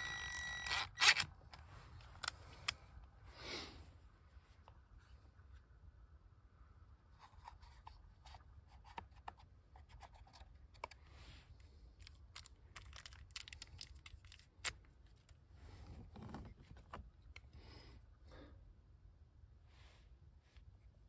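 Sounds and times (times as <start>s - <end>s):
hands handling small parts: 0.0s - 3.2s, 7.2s - 17.6s.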